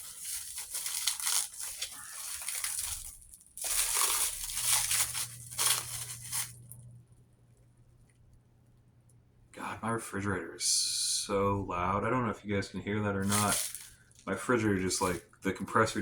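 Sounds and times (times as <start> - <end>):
plastic wrap crinkling and tearing: 0.0 - 6.8, 13.2 - 15.2
refrigerator compressor hum: 0.0 - 16.0.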